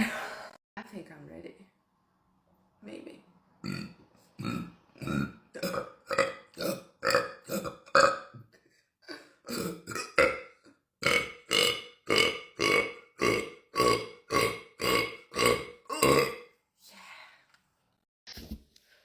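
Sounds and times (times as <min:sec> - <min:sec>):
woman burping: 0:03.7 - 0:16.4.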